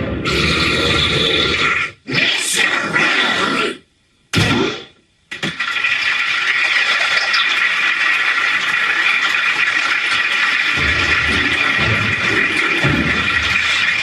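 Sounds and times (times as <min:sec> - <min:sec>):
water rushing: 0:05.6 - 0:14.0.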